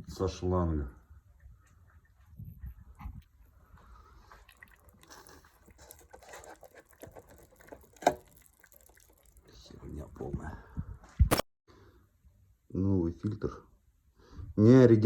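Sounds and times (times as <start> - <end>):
oil dripping into pan: 3.7 - 10.0.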